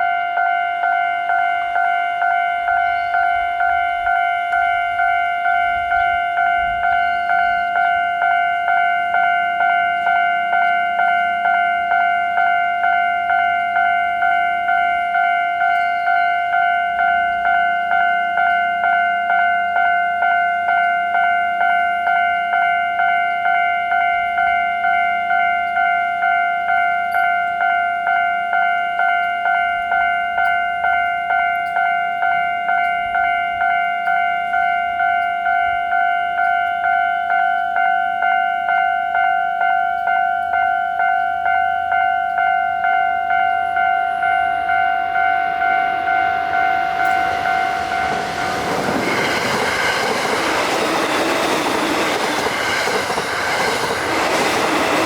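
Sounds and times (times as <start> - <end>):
railroad crossing bell ringing: 0.0 - 55.0.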